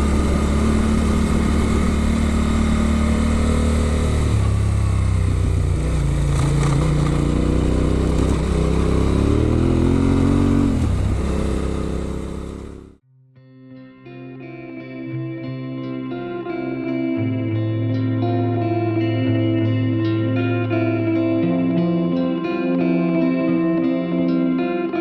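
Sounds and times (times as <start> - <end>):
motorcycle engine revving: 0.0 - 13.0
road noise: 0.0 - 13.0.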